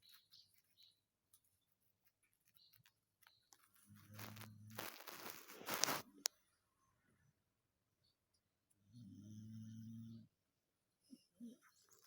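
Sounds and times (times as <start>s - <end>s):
dog snoring: 8.9s - 10.3s.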